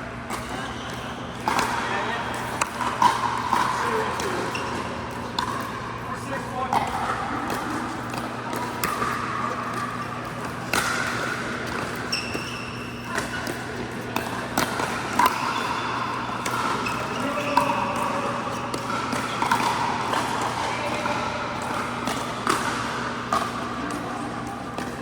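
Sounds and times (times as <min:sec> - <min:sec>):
ball bouncing: 0:02.6 - 0:05.8.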